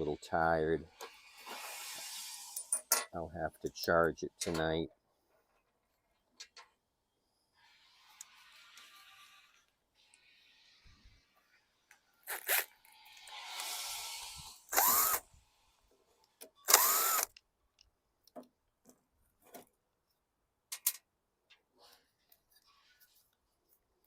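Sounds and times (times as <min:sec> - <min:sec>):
cordless drill whining: 0:12.4 - 0:15.3, 0:16.6 - 0:17.4.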